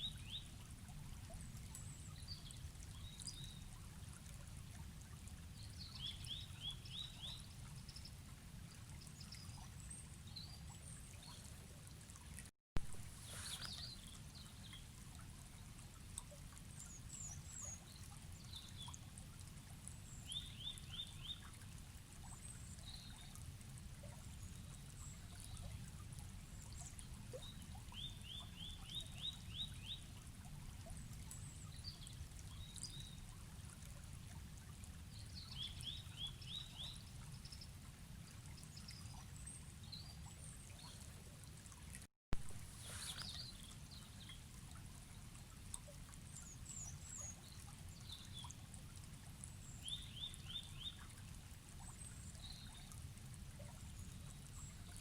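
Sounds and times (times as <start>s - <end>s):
river flowing: 12.9s - 14.6s, 42.4s - 45.6s
small birds chirping: 13.1s - 14.9s, 42.6s - 44.5s.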